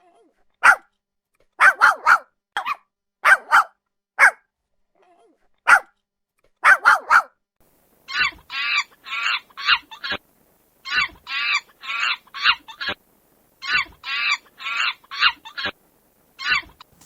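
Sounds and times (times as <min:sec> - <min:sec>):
dog barking: 0:00.6 - 0:00.9, 0:01.6 - 0:04.5, 0:05.7 - 0:05.9, 0:06.6 - 0:07.4.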